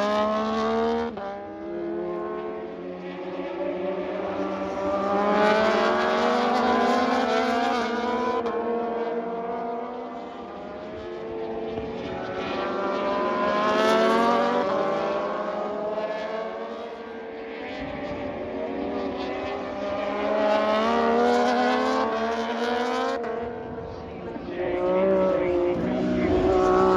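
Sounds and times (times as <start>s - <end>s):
racing motorcycles passing: 0.0s - 26.9s.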